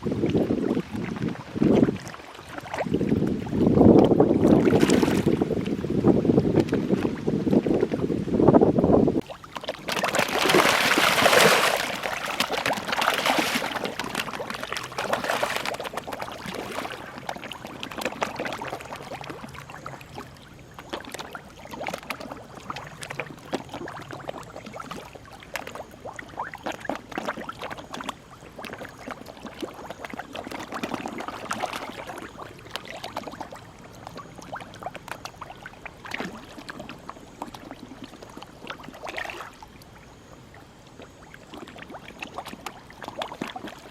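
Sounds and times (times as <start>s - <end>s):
fish splashing at water surface: 4.4s - 5.4s, 9.2s - 39.6s.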